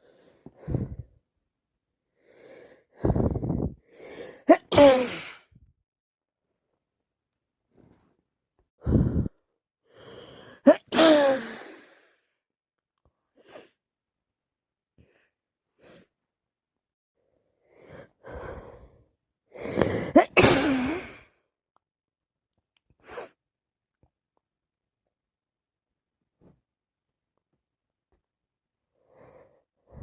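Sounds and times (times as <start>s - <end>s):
woman sneezing: 4.5s - 5.4s, 10.7s - 11.6s, 20.0s - 21.2s
drawn-in breath: 17.6s - 20.1s.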